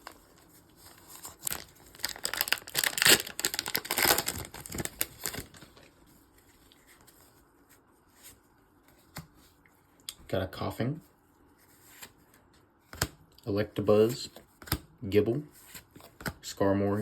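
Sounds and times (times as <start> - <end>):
foil wrapper crinkling and tearing: 1.0 - 5.8.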